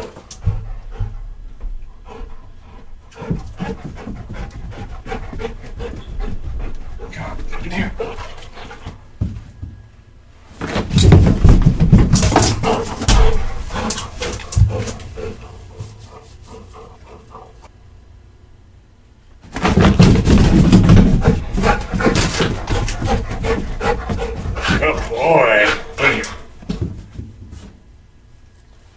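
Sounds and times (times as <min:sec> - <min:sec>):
dog paws clicking on hard floor: 0:10.8 - 0:17.2, 0:19.6 - 0:25.4.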